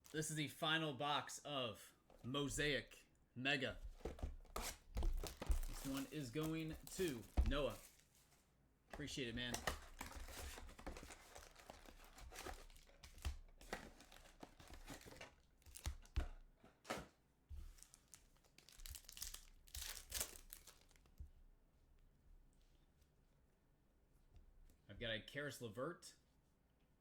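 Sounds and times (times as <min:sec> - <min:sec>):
plastic wrapping tearing and crinkling: 0:04.6 - 0:08.1, 0:09.5 - 0:16.2, 0:17.7 - 0:21.1.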